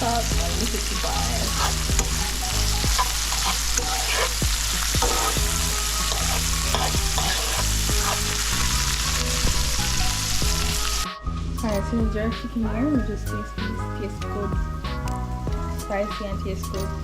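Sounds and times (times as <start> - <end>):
vegetables sizzling in a pan: 0.0 - 11.1
stirring utensil knocking: 1.4 - 8.2.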